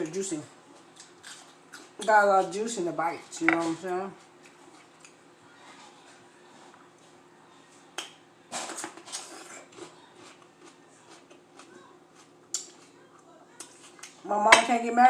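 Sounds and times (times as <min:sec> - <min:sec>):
crunchy chewing: 0:00.8 - 0:02.0, 0:08.6 - 0:13.0.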